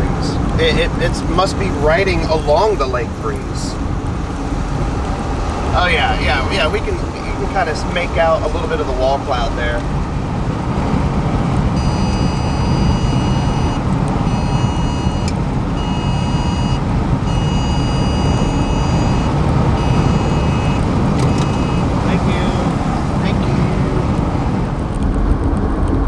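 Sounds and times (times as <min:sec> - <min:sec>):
car road and engine rumble: 0:00.0 - 0:26.0
high electronic beeping: 0:11.8 - 0:22.0.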